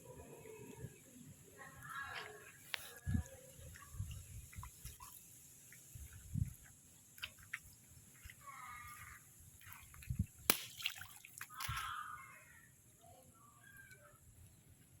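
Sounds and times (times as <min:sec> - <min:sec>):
water sloshing and splashing: 0:01.8 - 0:12.2
water drips: 0:01.8 - 0:12.4.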